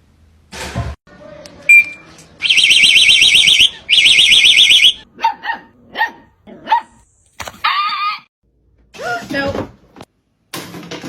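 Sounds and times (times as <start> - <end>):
electronic alarm warbling: 1.7 - 5.0
small dog barking: 5.2 - 7.0.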